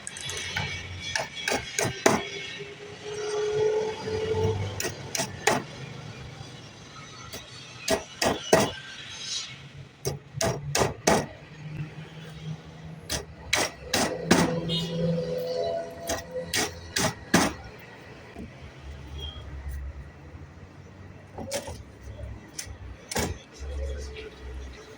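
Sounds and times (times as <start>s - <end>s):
hammer knocking on wood: 10.4s - 11.4s.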